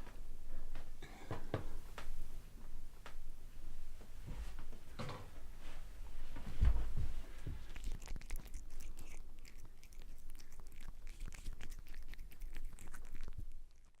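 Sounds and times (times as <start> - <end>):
wet chewing and crunching: 7.6 - 14.0.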